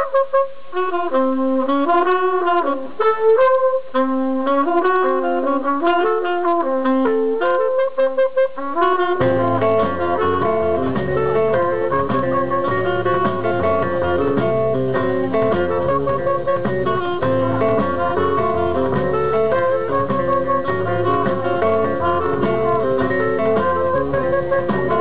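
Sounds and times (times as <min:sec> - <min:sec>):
bass line: 0:08.5 - 0:25.0
plucked string instrument: 0:08.6 - 0:25.0.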